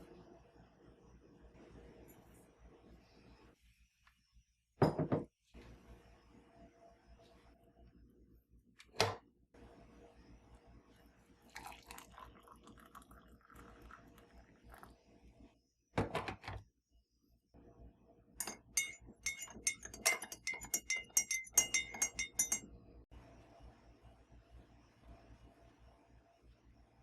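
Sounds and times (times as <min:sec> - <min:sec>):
kitchenware clinking: 0:04.8 - 0:05.3, 0:18.4 - 0:22.7.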